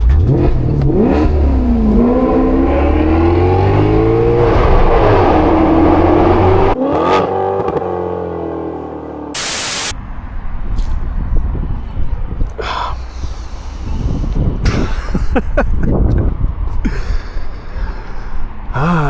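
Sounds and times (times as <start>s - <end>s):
car engine accelerating: 0.0s - 9.9s.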